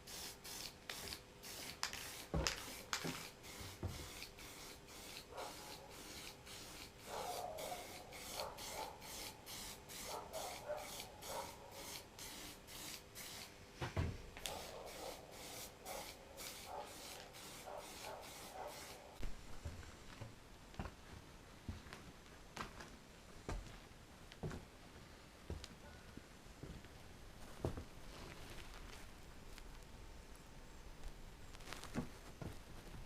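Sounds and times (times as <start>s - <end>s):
rhythmic hand scraping strokes: 0.0s - 13.6s, 14.4s - 19.2s.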